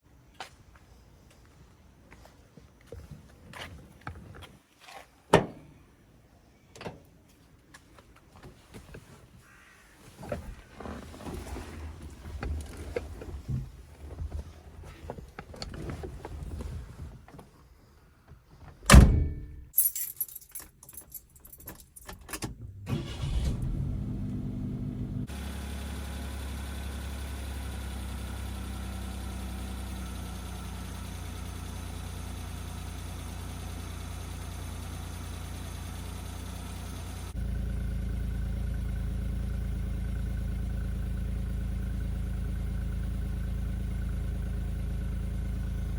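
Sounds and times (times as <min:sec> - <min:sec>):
keys jangling: 0:19.8 - 0:22.4
car engine starting and idling: 0:22.4 - 0:45.9.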